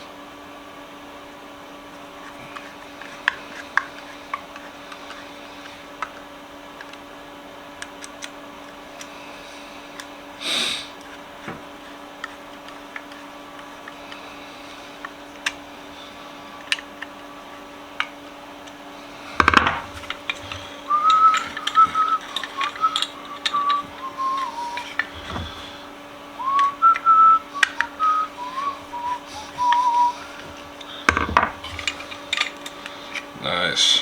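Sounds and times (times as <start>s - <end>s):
vise parts clicking and tapping: 1.9s - 7.1s, 7.7s - 9.2s, 10.9s - 33.4s
person whistling: 20.5s - 31.1s.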